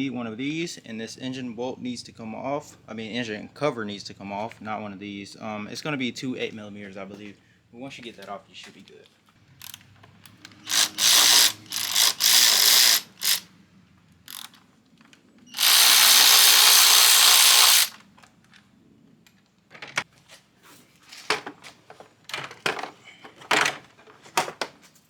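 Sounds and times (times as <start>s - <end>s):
power tool whirring: 9.6s - 13.5s, 14.3s - 14.6s, 15.5s - 18.0s.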